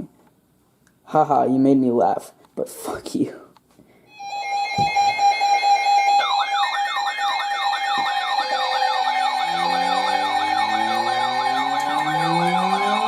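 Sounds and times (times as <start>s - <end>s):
electronic siren yelping: 4.2s - 13.0s
lower siren tones rising: 6.2s - 13.0s.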